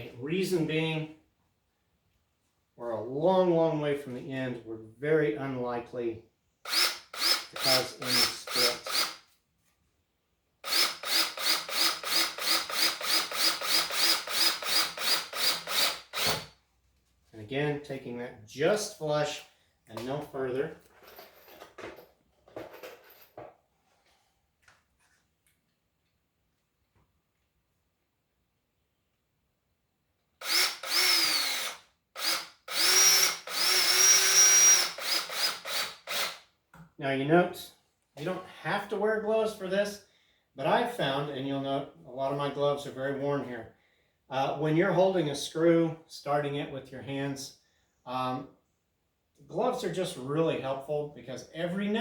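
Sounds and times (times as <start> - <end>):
drill driving screw into wood: 6.7 - 9.2, 10.6 - 16.5, 30.4 - 36.5.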